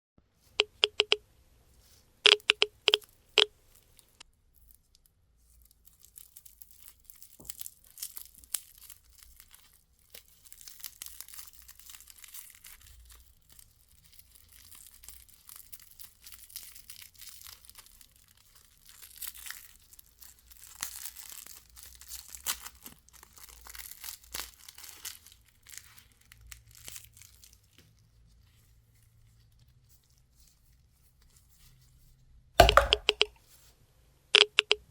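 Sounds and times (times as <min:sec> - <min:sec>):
short loud beeps: 0:00.6 - 0:01.2, 0:02.3 - 0:03.0, 0:34.4 - 0:34.8
plastic wrappers crackling: 0:05.5 - 0:28.0.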